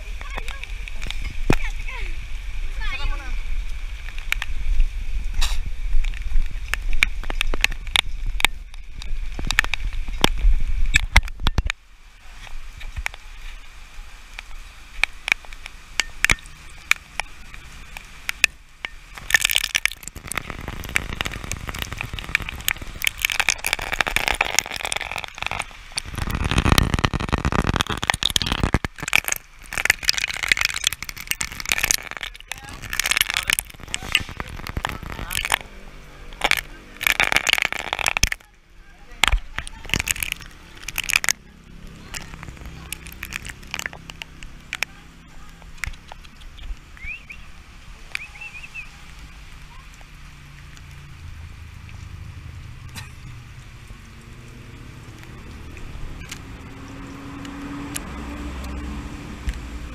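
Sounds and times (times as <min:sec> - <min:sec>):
raindrops striking camera: 0:00.0 - 0:59.9
rushing noise: 0:15.4 - 0:45.9
low rumble: 0:17.5 - 0:45.9, 0:50.2 - 0:59.9.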